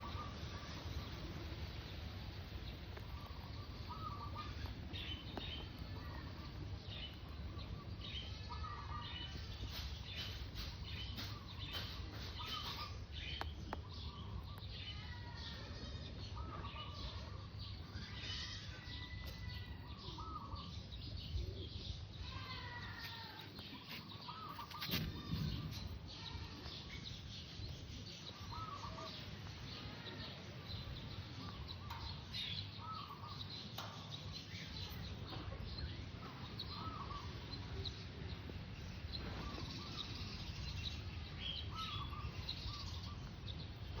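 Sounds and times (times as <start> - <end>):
birds chirping: 0.0 - 44.0.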